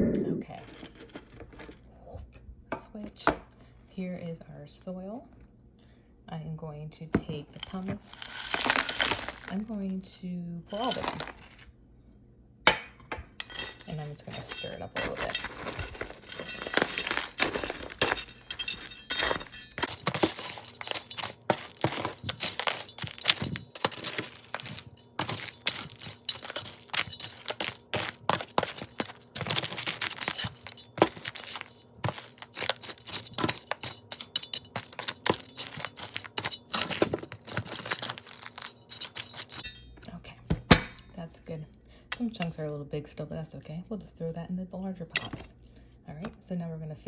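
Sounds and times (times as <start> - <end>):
stone chunks clinking: 7.6 - 9.7, 10.7 - 11.7, 13.4 - 40.0
gritty scrapes of stirred pumice: 13.4 - 39.6.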